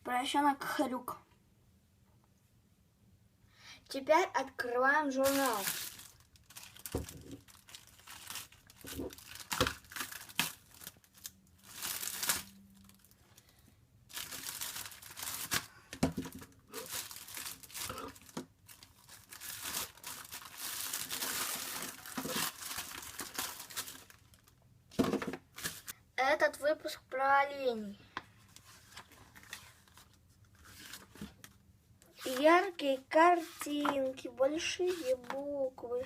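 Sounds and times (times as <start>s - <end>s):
plastic packaging crinkling and tearing: 5.1s - 13.5s, 14.1s - 24.6s, 25.4s - 25.9s.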